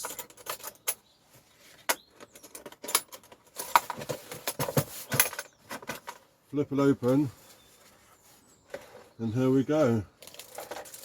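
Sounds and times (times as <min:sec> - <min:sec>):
plastic case clattering: 0:02.3 - 0:06.2.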